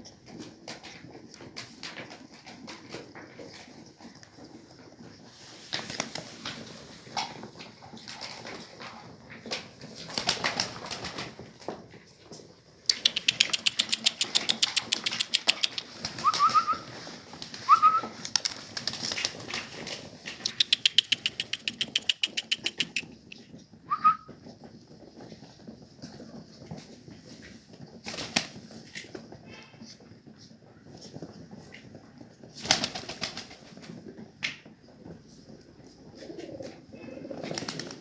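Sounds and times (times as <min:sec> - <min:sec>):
pigeon wings flapping: 0:00.2 - 0:11.7, 0:12.9 - 0:24.3, 0:25.2 - 0:29.3, 0:31.6 - 0:38.0
short rising whistles: 0:16.2 - 0:16.9, 0:17.7 - 0:18.1, 0:23.9 - 0:24.3.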